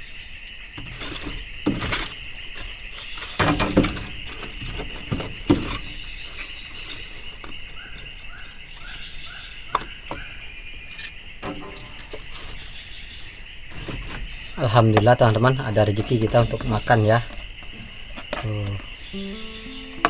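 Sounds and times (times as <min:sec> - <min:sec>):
insect chorus: 0:00.0 - 0:20.0
short knocks and rustles: 0:00.7 - 0:09.0.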